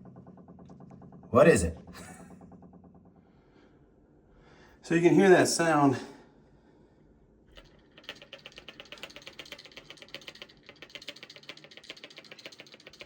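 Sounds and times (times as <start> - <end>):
rapid knocking in water pipes: 7.6 - 13.0.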